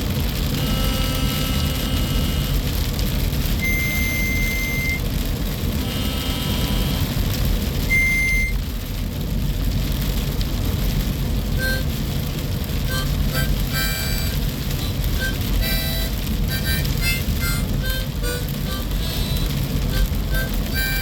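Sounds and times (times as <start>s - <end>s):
faint electronic tones: 0.6s - 2.6s, 3.6s - 5.0s, 5.8s - 7.2s
short high electronic beep: 3.6s - 5.0s, 7.9s - 8.6s.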